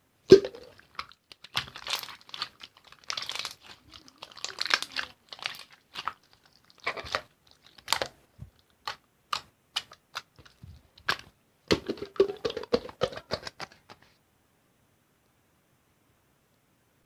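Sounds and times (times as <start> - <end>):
slime clicking and crackling: 0.3 - 13.8.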